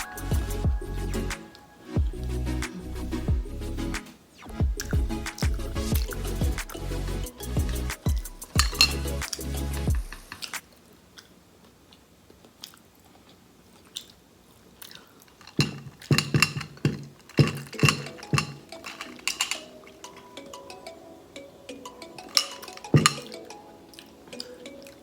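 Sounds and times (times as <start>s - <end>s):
chewing crunchy tacos: 10.0s - 16.2s.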